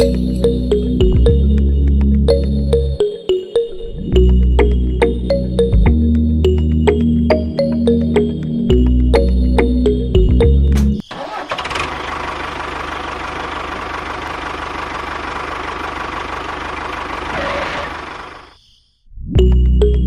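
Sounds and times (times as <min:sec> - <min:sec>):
small engine running: 0:11.2 - 0:18.4.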